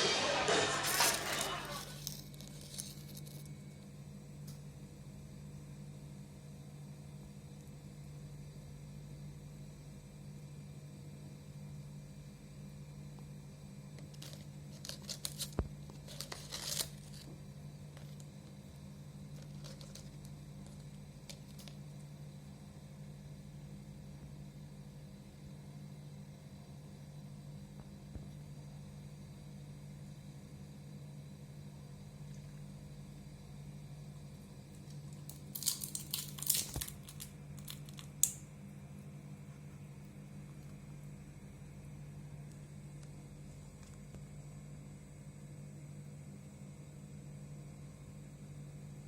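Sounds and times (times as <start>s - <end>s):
steady low hum: 0.0s - 49.0s
packaging crinkling and tearing: 0.8s - 3.6s, 14.1s - 17.4s, 19.4s - 21.8s, 35.1s - 38.4s.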